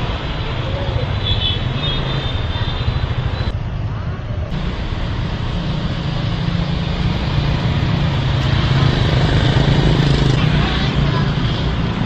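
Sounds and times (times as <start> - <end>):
vehicle engines and road noise: 0.0 - 12.0.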